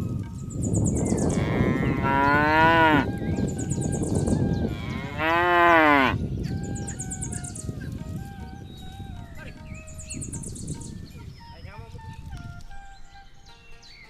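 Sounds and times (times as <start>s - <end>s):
cattle mooing: 1.3s - 3.2s, 4.7s - 6.2s.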